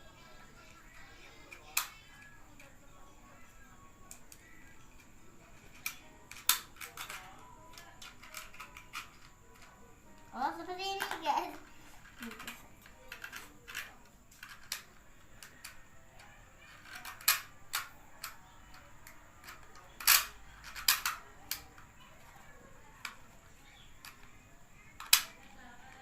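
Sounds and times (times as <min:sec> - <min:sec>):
plastic toy pistol clicks: 0:01.6 - 0:02.2, 0:05.7 - 0:09.7, 0:16.8 - 0:18.4, 0:19.0 - 0:21.8, 0:25.0 - 0:25.5.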